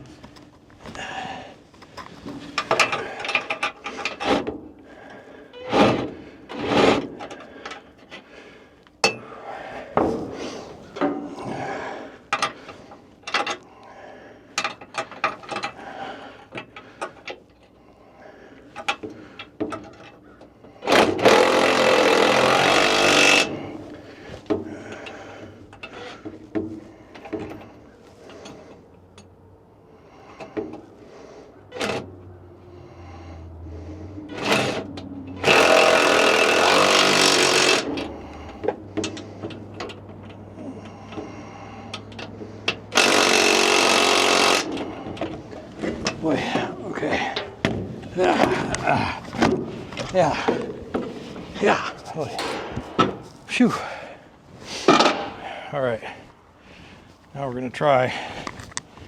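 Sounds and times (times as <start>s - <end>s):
power tool running: 20.9s - 23.7s, 35.4s - 38.1s, 42.9s - 44.8s.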